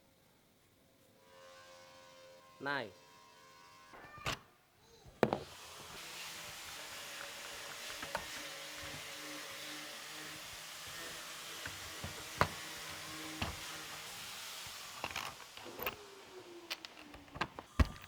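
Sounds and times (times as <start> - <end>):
wood knocking: 5.2 - 9.2, 10.6 - 16.0
small electric motor running: 5.2 - 18.0.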